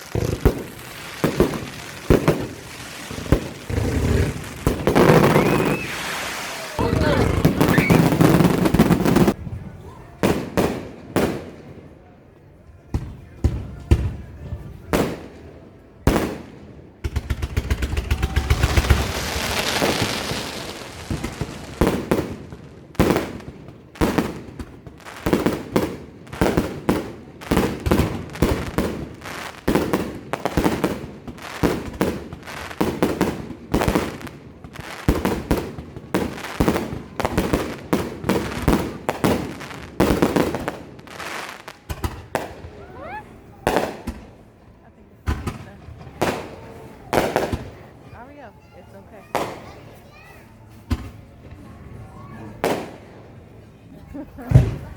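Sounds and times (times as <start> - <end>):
fireworks crackling hiss: 0.0 - 9.4, 17.2 - 44.2
fireworks bangs: 0.0 - 12.0, 12.8 - 44.5, 45.2 - 48.4, 49.2 - 49.8, 52.6 - 53.2, 54.3 - 54.9.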